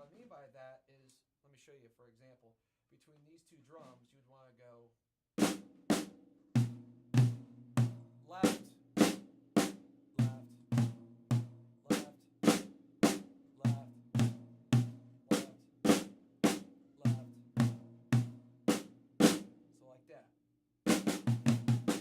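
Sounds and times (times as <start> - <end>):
drum strokes: 5.4 - 19.5, 20.9 - 22.0.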